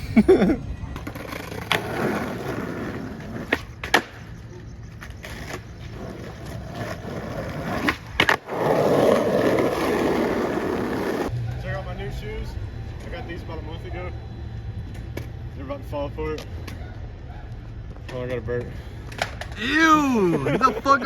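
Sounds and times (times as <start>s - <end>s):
skateboard rolling on concrete: 0.0s - 19.7s
skateboard clacking on ground: 0.9s - 11.8s, 18.0s - 19.6s.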